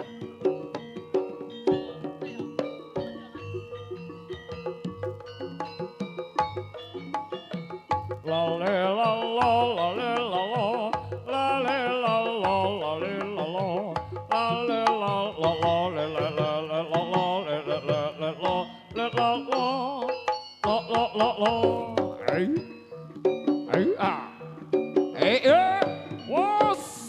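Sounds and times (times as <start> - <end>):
ornamented wavering melody: 0.0 - 8.9, 21.1 - 27.0
drums and percussion: 0.0 - 27.0.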